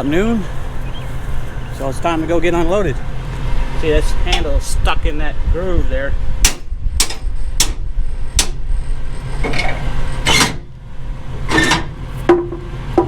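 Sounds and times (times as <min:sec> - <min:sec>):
metal handle clanking: 0:03.8 - 0:04.7, 0:06.4 - 0:08.6, 0:09.2 - 0:13.0
handle rattling scrapes: 0:08.3 - 0:10.7, 0:11.4 - 0:13.0.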